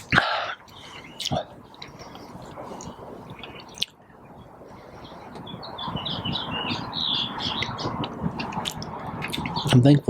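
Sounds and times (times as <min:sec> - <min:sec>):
bird harsh chirps: 0:04.8 - 0:09.8.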